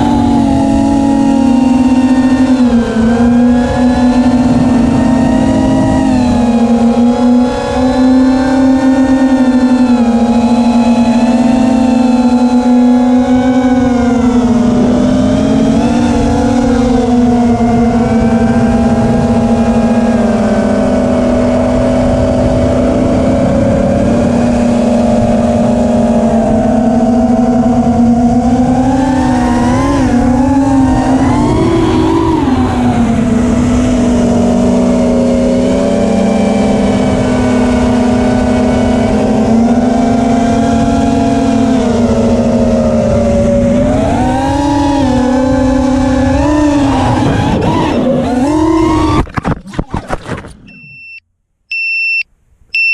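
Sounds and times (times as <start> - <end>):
drone motors whining: 0.0 - 52.2
wind rushing: 0.2 - 8.1.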